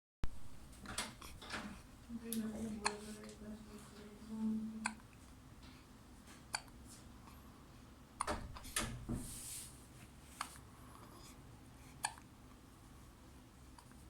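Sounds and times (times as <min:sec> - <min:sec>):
knocks and rustling: 0:00.4 - 0:01.8, 0:08.2 - 0:09.5
baby hiccuping: 0:04.8 - 0:05.0, 0:06.5 - 0:06.7, 0:12.0 - 0:12.2.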